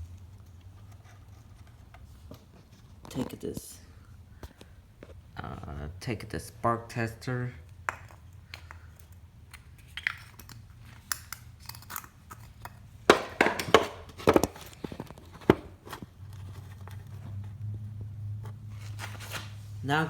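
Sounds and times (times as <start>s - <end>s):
clicks and knocks of handled parts: 7.7s - 17.5s.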